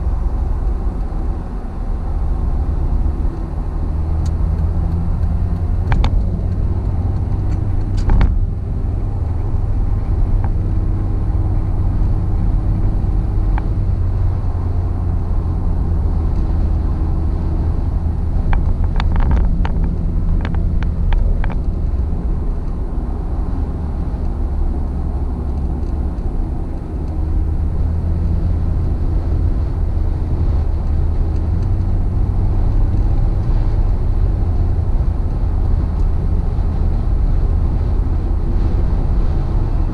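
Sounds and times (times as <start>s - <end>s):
car engine and tyre rumble: 0.0s - 39.9s
clicks and rattles: 18.5s - 22.8s.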